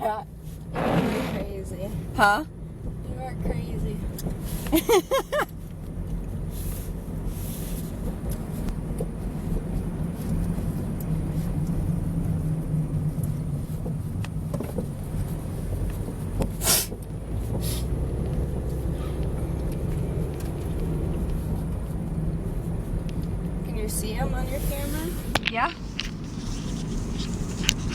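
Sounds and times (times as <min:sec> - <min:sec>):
car driving rumble: 0:00.0 - 0:27.9
brief sharp hiss: 0:16.6 - 0:17.0.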